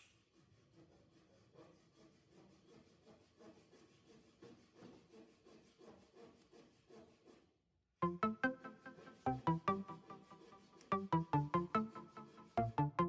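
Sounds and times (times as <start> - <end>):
rhythmic scraping strokes: 8.1 - 13.0.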